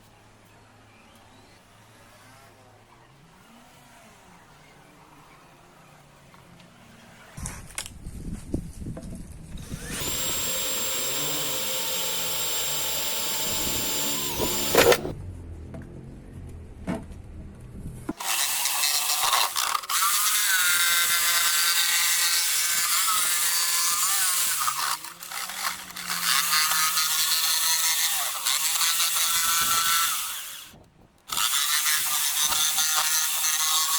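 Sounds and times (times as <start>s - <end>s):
electric power tool cutting wood: 9.6s - 15.2s, 18.1s - 33.9s.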